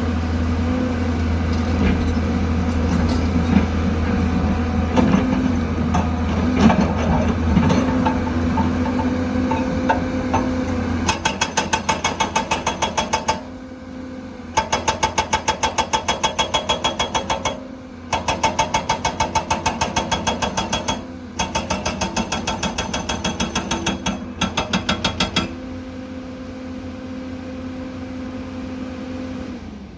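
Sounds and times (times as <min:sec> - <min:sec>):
excavator engine running: 0:00.0 - 0:13.8
hydraulic rock breaker hammering: 0:01.5 - 0:13.6, 0:14.5 - 0:25.7.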